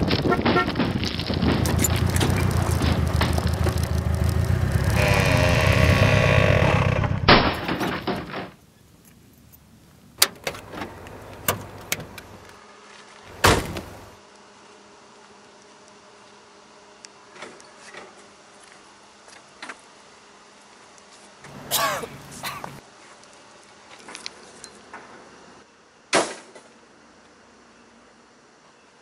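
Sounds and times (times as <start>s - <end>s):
vehicle engine running loudly: 1.4s - 7.3s.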